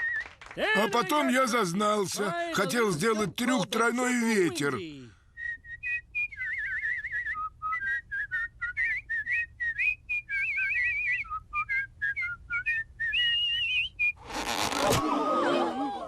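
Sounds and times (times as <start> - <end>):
person whistling a lively tune: 0.0 - 0.4, 5.4 - 14.2.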